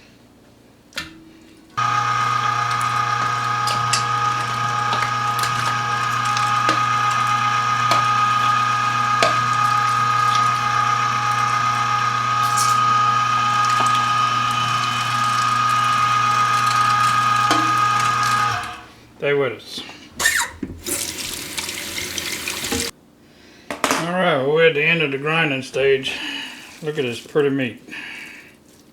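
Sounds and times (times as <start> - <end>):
meat grinder humming: 1.7 - 19.3, 20.0 - 22.9.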